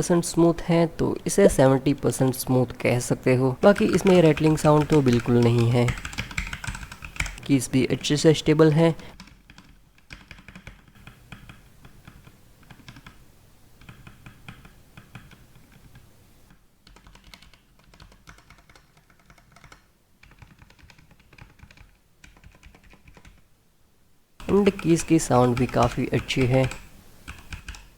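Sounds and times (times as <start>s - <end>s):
mechanical keyboard typing: 3.6s - 13.2s, 13.8s - 16.0s, 16.8s - 23.4s, 24.4s - 27.9s.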